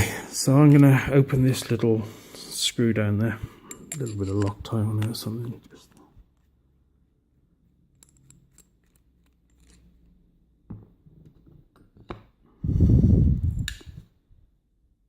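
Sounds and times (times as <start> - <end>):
small metal clicks: 7.9 - 10.1.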